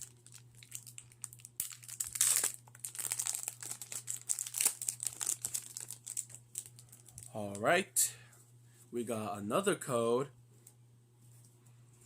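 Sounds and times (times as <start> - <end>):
foil wrapper crinkling and tearing: 0.0 - 7.4.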